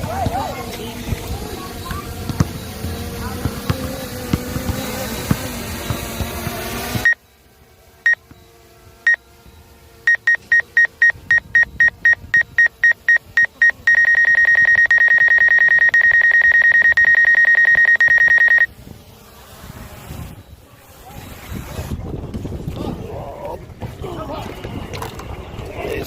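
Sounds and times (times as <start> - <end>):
street noise: 0.0 - 26.0
high-pitched electronic beeping: 7.0 - 7.2, 9.1 - 18.7
loud wind: 18.7 - 26.0.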